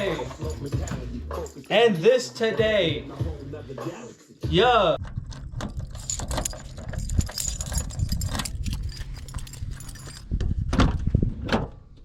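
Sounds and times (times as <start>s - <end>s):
small metal parts being handled: 0.0s - 1.7s, 5.0s - 10.4s.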